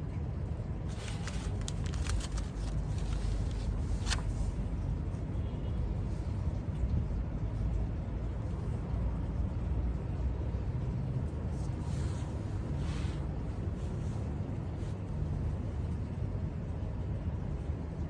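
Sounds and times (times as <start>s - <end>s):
low background rumble: 0.0s - 18.0s
light clicks or rustles: 0.9s - 4.6s.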